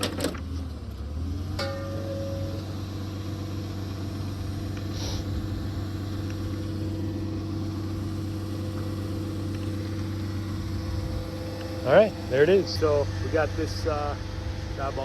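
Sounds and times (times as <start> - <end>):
auger engine idling: 0.0 - 15.0
short hiss: 4.8 - 5.5.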